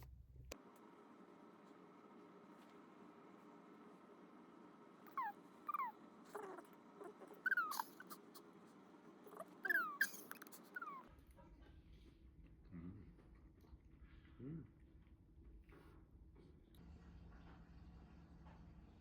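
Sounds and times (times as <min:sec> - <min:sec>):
faint steady hum: 0:00.0 - 0:19.0
cat mewing: 0:05.1 - 0:08.4, 0:09.3 - 0:11.1.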